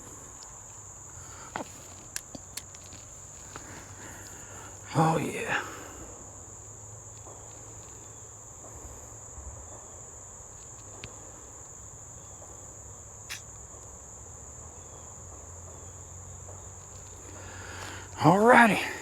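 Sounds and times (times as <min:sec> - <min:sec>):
faint ticks: 0:00.0 - 0:14.0, 0:15.3 - 0:19.0
crickets chirping: 0:00.0 - 0:19.0
sharp click: 0:13.3 - 0:13.6.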